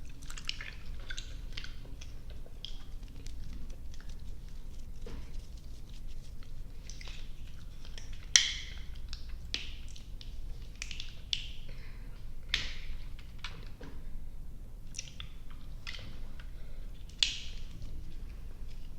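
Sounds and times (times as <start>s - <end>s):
chewing sticky candy: 0.0s - 11.7s.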